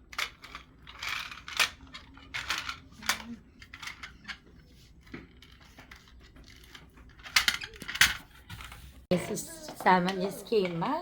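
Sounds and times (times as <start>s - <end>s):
plastic toy cars clattering: 0.0s - 8.8s.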